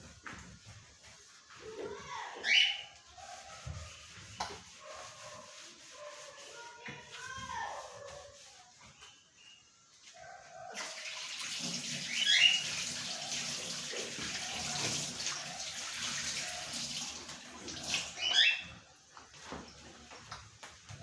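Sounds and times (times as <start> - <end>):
water running from a tap: 10.8 - 18.7.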